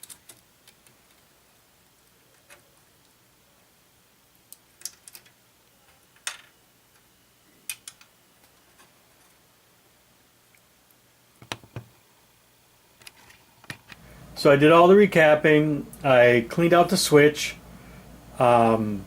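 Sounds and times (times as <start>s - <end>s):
faint steady hum: 0.0s - 19.0s
louder knocks: 11.4s - 11.9s
tools clicking and tapping: 11.4s - 12.0s.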